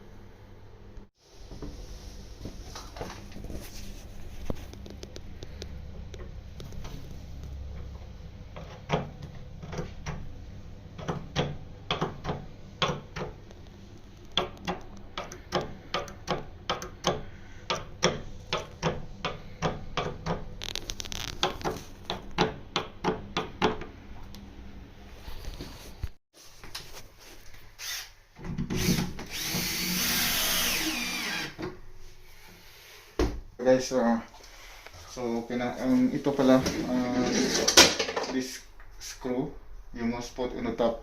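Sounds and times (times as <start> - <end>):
steady low hum: 0.0 - 26.1
sharp knocks and clicks: 11.0 - 23.9.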